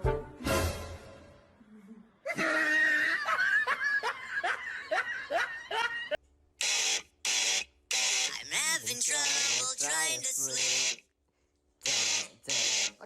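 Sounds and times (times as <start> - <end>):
person laughing: 1.6 - 6.2.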